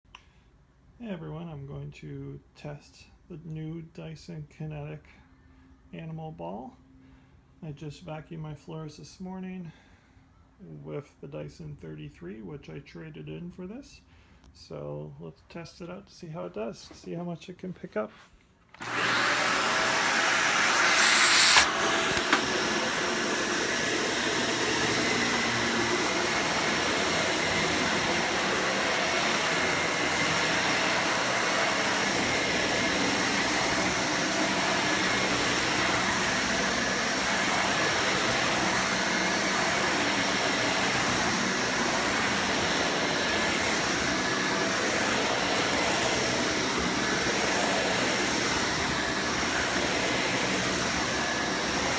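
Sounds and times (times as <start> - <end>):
canister vacuum running: 18.7 - 51.9
rushing hiss: 20.0 - 23.0
clicks: 20.8 - 22.7.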